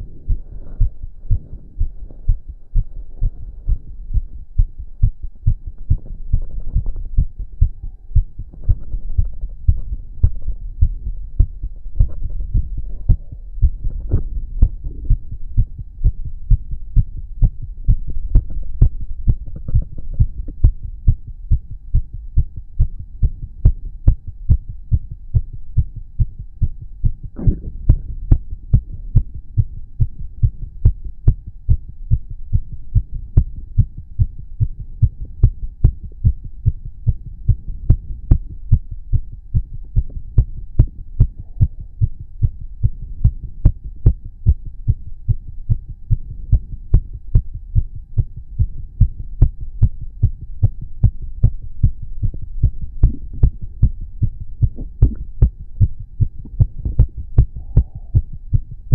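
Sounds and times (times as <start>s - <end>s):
heart beating fast: 0.0s - 58.9s
stomach gurgle: 12.0s - 15.2s, 19.4s - 20.6s, 27.4s - 28.5s, 53.0s - 53.7s, 54.6s - 55.5s, 56.4s - 58.3s.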